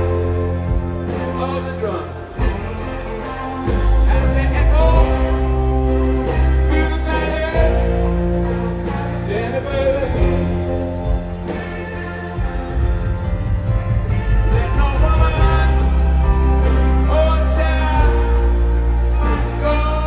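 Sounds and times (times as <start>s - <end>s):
live rock band playing: 0.0s - 20.0s
sliding lead guitar notes: 0.0s - 20.0s.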